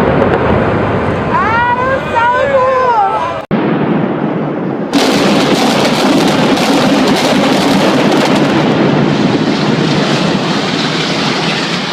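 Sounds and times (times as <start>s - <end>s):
rumbling roar of falling debris: 3.5s - 11.9s.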